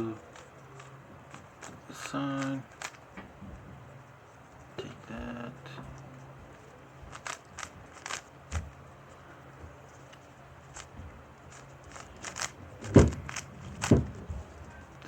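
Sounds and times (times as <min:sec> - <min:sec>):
puzzle cube plastic clicks: 0:00.2 - 0:03.1, 0:07.1 - 0:08.7, 0:10.1 - 0:14.2
loud knock: 0:12.8 - 0:14.3.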